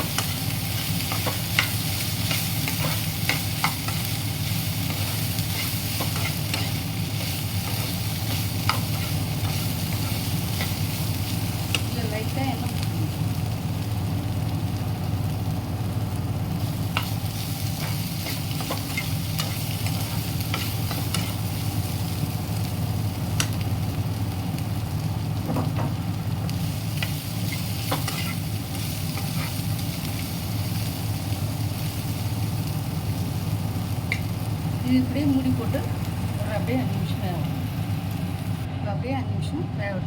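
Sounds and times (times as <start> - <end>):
spatula scraping pan: 0.0 - 10.9, 27.0 - 28.5
food sizzling in oil: 0.0 - 38.7
steady low hum: 0.0 - 40.0.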